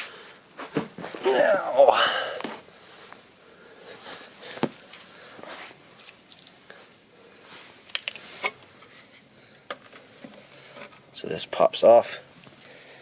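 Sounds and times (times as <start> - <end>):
soft rustling: 2.5 - 9.3.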